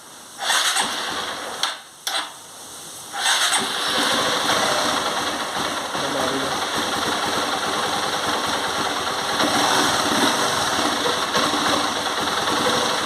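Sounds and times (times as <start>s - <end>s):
engine knocking: 3.2s - 13.0s
motorcycle engine idling: 3.2s - 13.0s.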